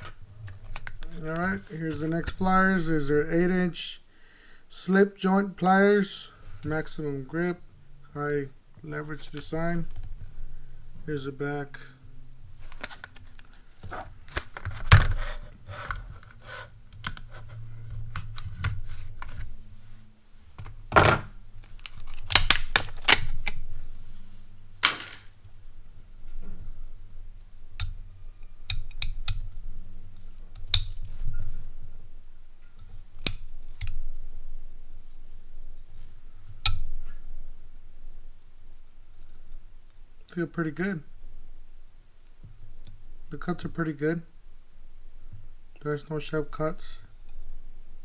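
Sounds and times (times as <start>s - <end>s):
packaging snapping: 21.6s - 23.6s.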